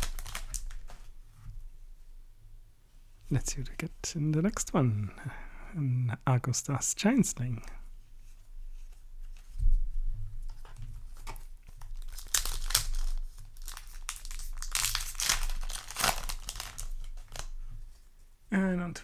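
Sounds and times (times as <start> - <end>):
foil wrapper crinkling: 0.0 - 1.1, 11.2 - 17.5.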